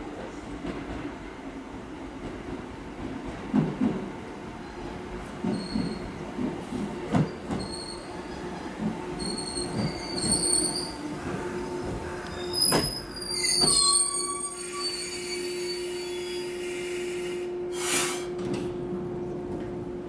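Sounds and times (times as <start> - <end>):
train wheels squealing on rails: 5.4 - 6.3, 7.1 - 18.6
train rumble: 17.0 - 20.0.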